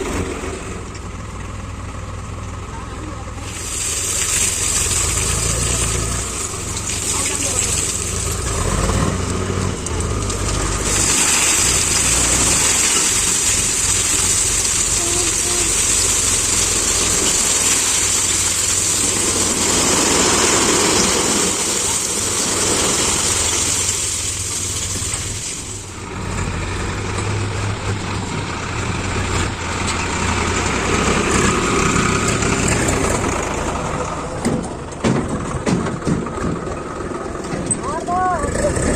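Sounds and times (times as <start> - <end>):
diesel engine running: 0.0 - 38.9
strong hissing noise: 3.4 - 8.6, 10.7 - 26.2.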